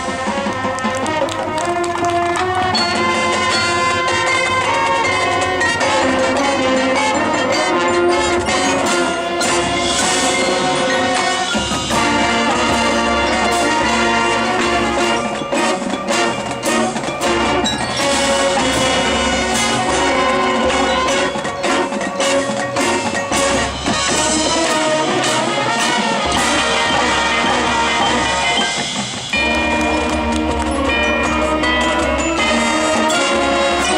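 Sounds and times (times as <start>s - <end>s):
marching band playing: 0.0s - 33.9s
rapid percussion strikes: 0.0s - 33.9s.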